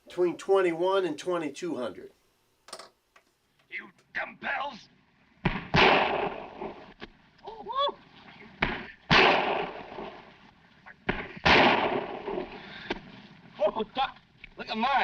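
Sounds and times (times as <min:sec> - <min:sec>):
gunshots with echo: 0:05.5 - 0:06.9, 0:08.8 - 0:10.2, 0:11.1 - 0:12.6.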